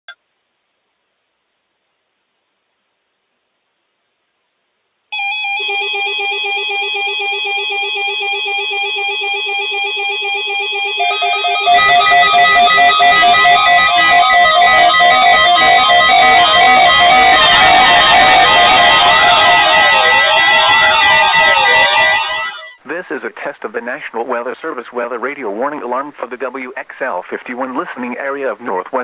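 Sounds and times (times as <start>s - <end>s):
electronic music: 6.7s - 22.8s.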